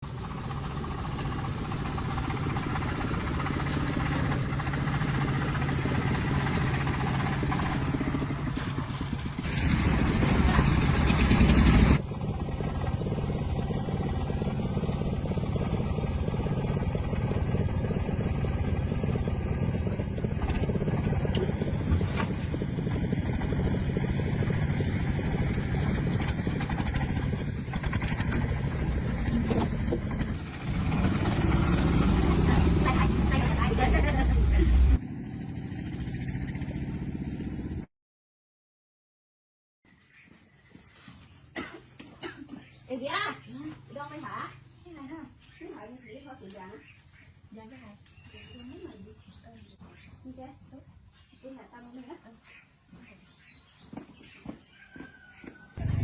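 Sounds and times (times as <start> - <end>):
engine running: 0.0 - 37.9, 53.3 - 56.0.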